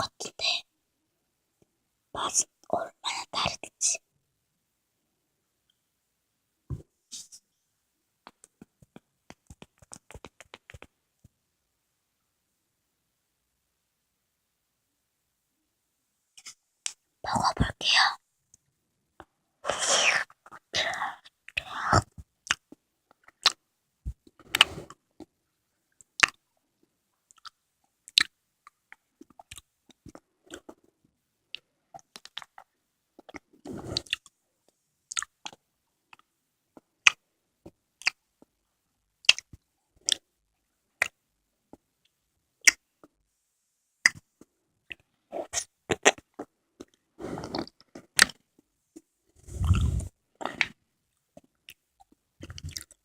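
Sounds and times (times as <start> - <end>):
wet mouth clicks: 8.3 - 10.9, 21.4 - 23.6, 31.6 - 34.3, 35.1 - 36.3, 39.2 - 40.2, 42.6 - 42.8, 44.9 - 48.4, 49.4 - 50.8, 51.4 - 53.0
chewing jelly: 21.4 - 23.6, 27.3 - 30.8, 31.5 - 34.3, 35.1 - 37.2, 39.2 - 40.3, 44.8 - 48.4, 49.4 - 50.8, 51.4 - 53.0.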